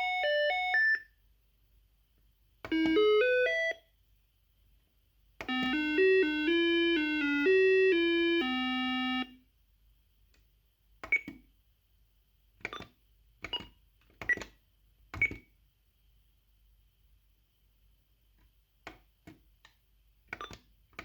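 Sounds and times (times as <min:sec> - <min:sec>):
intercom call melody: 0:05.5 - 0:09.4.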